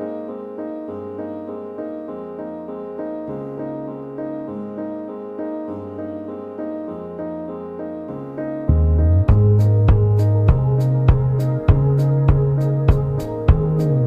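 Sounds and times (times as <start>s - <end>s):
gentle piano music: 0.0s - 14.0s.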